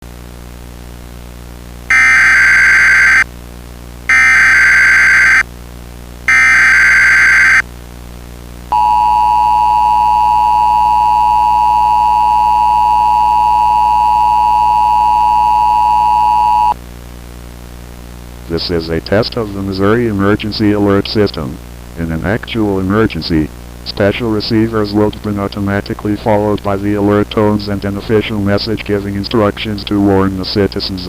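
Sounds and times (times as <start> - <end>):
low hum and hiss: 0.0 - 31.0
harsh digital data bursts: 1.9 - 3.2, 4.1 - 5.4, 6.3 - 7.6
two-tone attention signal: 1.9 - 3.2, 4.1 - 5.4, 6.3 - 7.6, 8.8 - 16.8.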